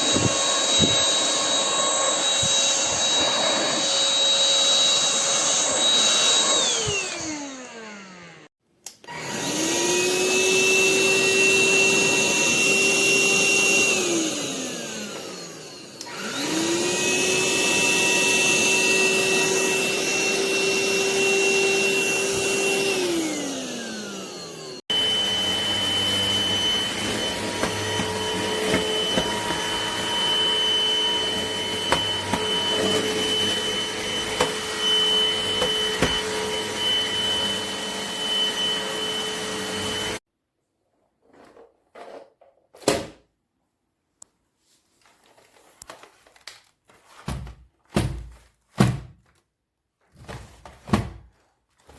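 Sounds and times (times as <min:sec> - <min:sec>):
stick vacuum motor whining: 0:00.0 - 0:40.2.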